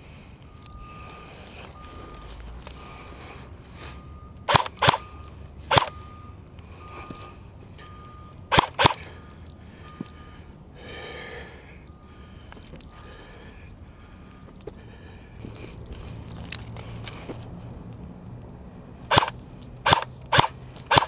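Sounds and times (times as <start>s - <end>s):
airsoft guns firing sharp snaps: 4.5s - 5.0s, 5.7s - 5.9s, 8.5s - 9.0s, 19.1s - 21.0s.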